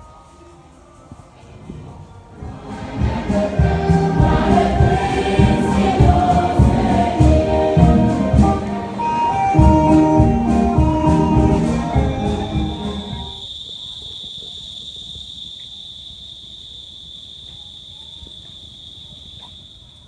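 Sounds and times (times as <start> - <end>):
choir singing: 2.3 - 13.4
low rhythmic beat: 2.4 - 13.4.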